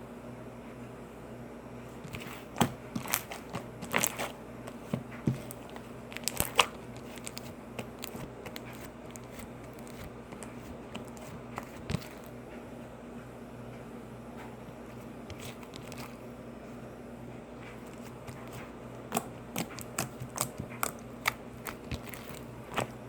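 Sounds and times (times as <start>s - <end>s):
low steady hum: 0.0s - 23.0s
slime popping and crackling: 2.1s - 4.3s, 5.3s - 12.3s, 17.9s - 23.0s.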